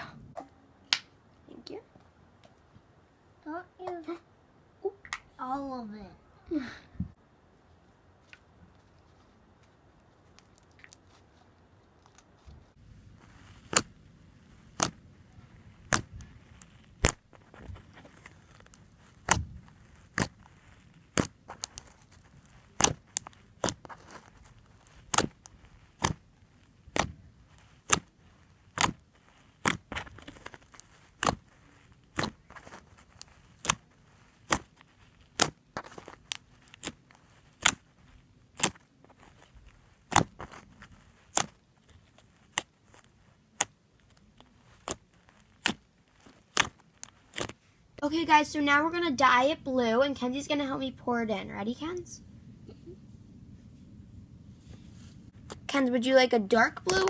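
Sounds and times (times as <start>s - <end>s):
slime being kneaded: 8.2s - 48.1s, 55.3s - 57.0s
air popping from slime: 15.6s - 37.9s, 39.9s - 41.6s.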